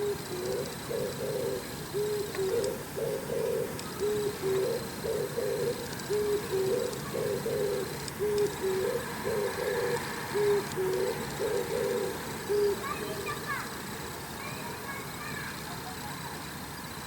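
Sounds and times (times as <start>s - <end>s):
dove cooing: 0.0s - 13.5s.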